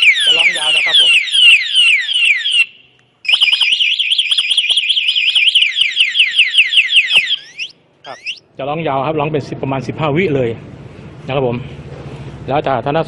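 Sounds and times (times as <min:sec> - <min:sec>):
motorcycle alarm siren: 0:00.0 - 0:08.4.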